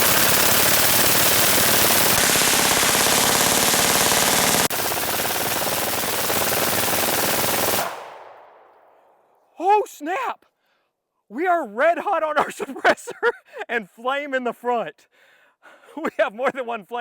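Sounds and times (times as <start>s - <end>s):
suppressed rifle automatic fire: 0.0s - 8.8s.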